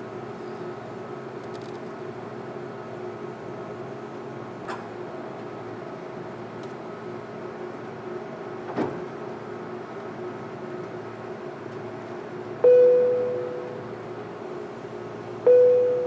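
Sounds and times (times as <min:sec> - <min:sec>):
cabin chime: 0:12.6 - 0:13.9, 0:15.5 - 0:16.0.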